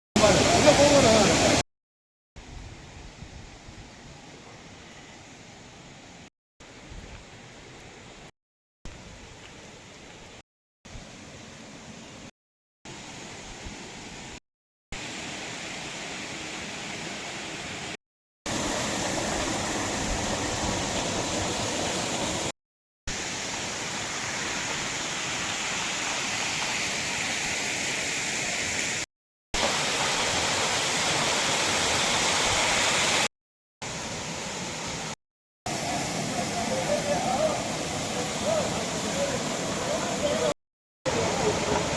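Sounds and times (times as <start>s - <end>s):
waterfall rushing: 0.2s - 1.6s, 15.0s - 22.5s, 23.1s - 29.0s, 29.6s - 41.9s.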